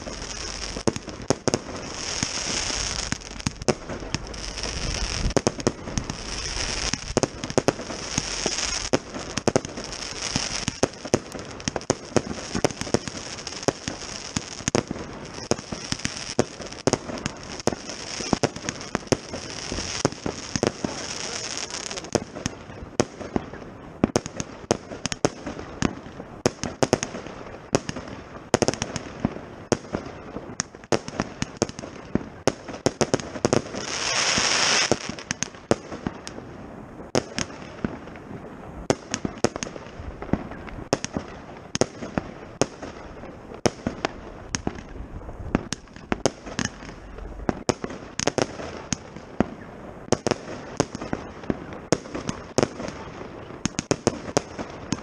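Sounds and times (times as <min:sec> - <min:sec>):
loud firework hiss: 0:00.0 - 0:22.2, 0:33.1 - 0:35.4
firework bangs and pops: 0:00.0 - 0:55.0.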